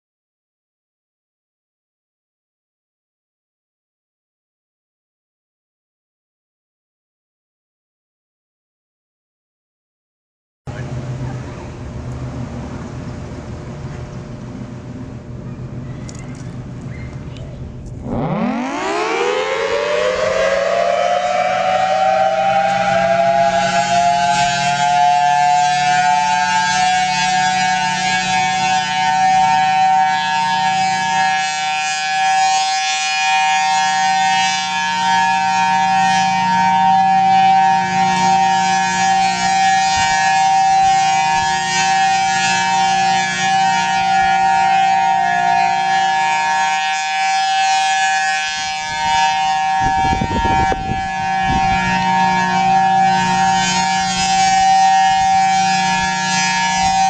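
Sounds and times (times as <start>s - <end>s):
warning siren steady tone: 18.0s - 57.0s.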